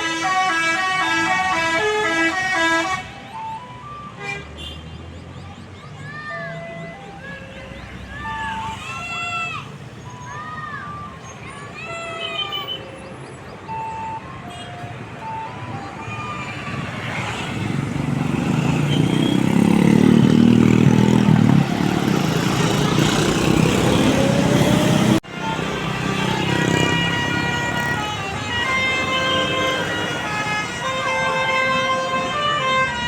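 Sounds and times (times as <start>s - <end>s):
musical bus horn: 0.0s - 4.9s, 24.0s - 33.0s
bus engine passing: 12.6s - 33.0s.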